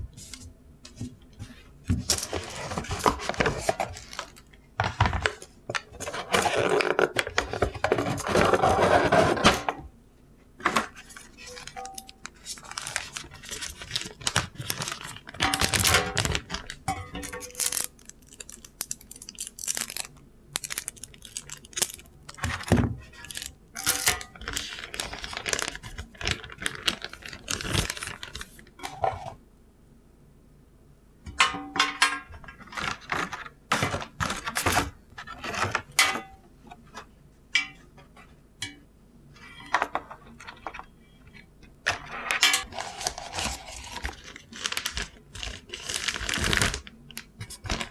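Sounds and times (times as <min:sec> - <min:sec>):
packaging rustling: 0:02.0 - 0:09.6, 0:10.6 - 0:29.3, 0:32.4 - 0:36.0, 0:41.9 - 0:47.9.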